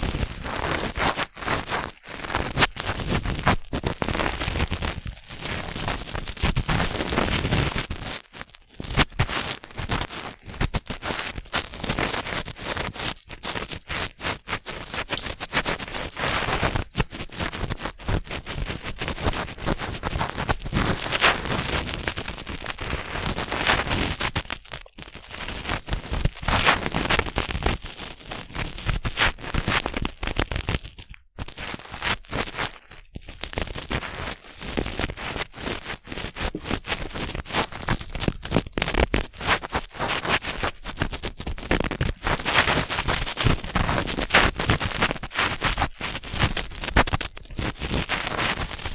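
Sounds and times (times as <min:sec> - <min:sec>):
cotton swab scratching microphone: 0:00.0 - 0:07.9, 0:10.8 - 0:24.6, 0:33.5 - 0:48.9.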